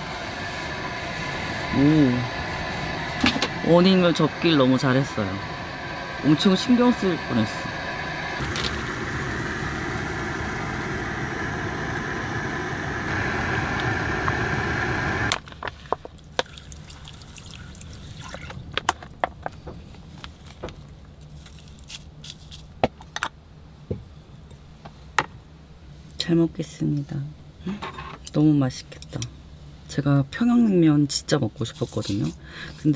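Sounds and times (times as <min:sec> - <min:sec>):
gusty wind rushing and whistling: 0:00.0 - 0:15.3.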